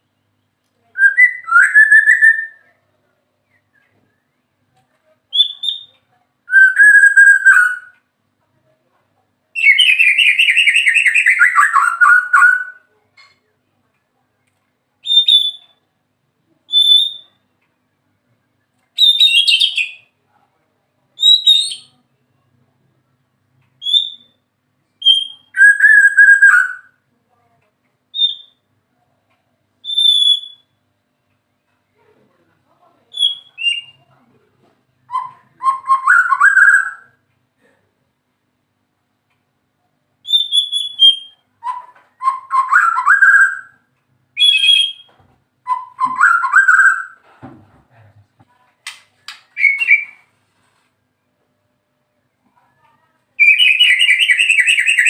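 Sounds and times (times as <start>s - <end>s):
bird singing whistled phrases: 1.0s - 2.7s, 5.3s - 7.9s, 9.6s - 12.9s, 15.0s - 15.8s, 16.7s - 17.4s, 19.0s - 20.1s, 21.2s - 21.9s, 23.8s - 24.4s, 25.0s - 26.9s, 28.2s - 28.6s, 29.8s - 30.8s, 33.1s - 34.0s, 35.1s - 37.2s, 40.2s - 43.8s, 44.4s - 47.2s, 49.6s - 50.3s, 53.4s - 55.0s.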